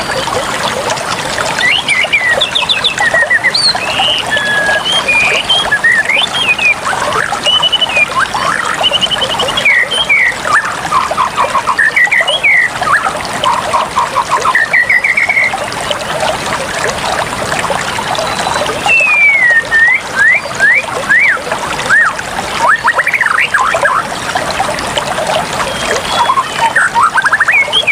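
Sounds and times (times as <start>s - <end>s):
water trickling: 0.0s - 27.9s
birds chirping: 1.5s - 16.0s, 18.0s - 21.4s, 25.5s - 27.9s.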